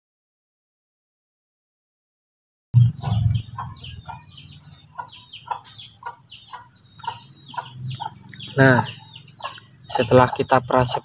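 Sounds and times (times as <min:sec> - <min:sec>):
low rumble: 0:02.8 - 0:04.6
chickens clucking: 0:02.8 - 0:11.0
high-pitched chicken peeps: 0:02.8 - 0:11.0.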